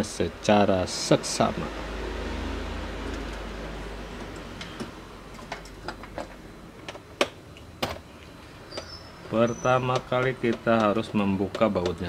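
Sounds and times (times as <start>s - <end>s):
low hum: 0.3s - 10.2s
laptop and tools clicking: 3.0s - 3.5s, 4.1s - 12.0s.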